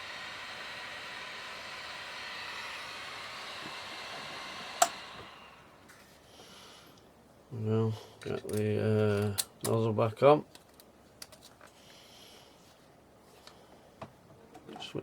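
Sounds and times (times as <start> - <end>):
hot air blower hissing: 0.0 - 5.9.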